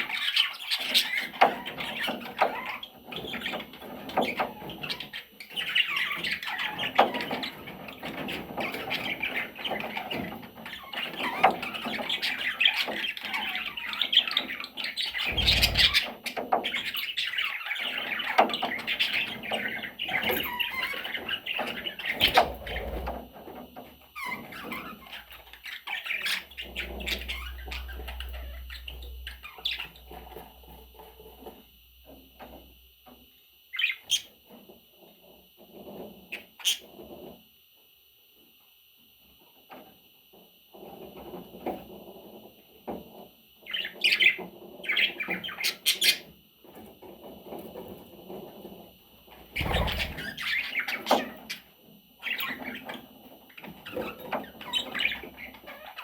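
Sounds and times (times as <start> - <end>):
budgerigar chattering: 15.2 - 16.1
budgerigar chirping: 15.2 - 16.1, 49.6 - 50.8.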